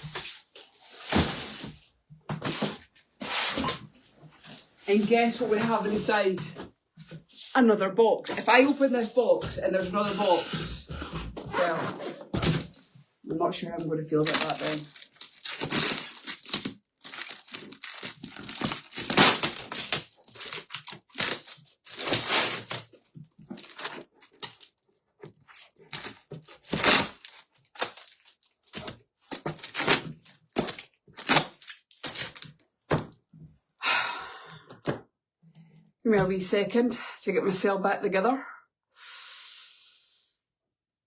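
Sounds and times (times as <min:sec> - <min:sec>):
cardboard and tape ripping: 0:14.2 - 0:33.2.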